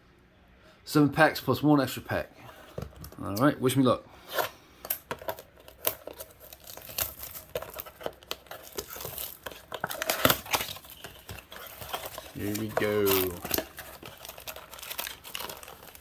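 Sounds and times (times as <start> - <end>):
card wrapping crinkling and tearing: 4.2 - 16.0.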